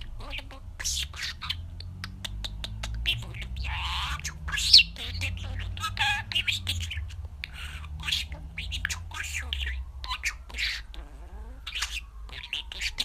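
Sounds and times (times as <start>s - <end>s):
budgerigar warbling and chattering: 0.0s - 13.0s.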